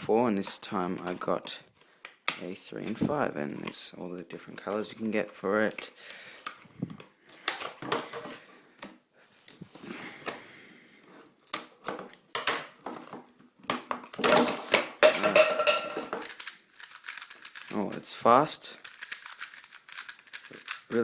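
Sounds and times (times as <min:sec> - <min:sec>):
puzzle cube clicking: 0:16.2 - 0:18.0, 0:18.8 - 0:21.0.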